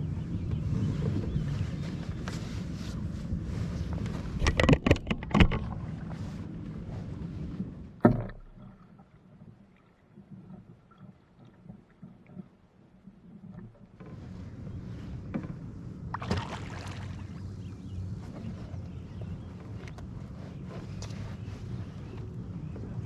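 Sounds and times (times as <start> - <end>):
wind rumbling on microphone: 0.0 - 23.0
canoe paddling: 0.6 - 23.0
sharp loud knocks: 8.0 - 8.8
faint taps and splashes: 8.0 - 14.2.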